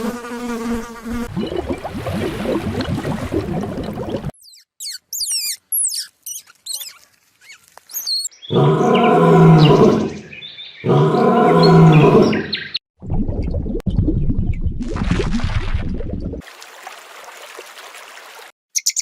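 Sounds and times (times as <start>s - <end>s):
bird chirping: 4.4s - 12.8s, 18.8s - 19.0s.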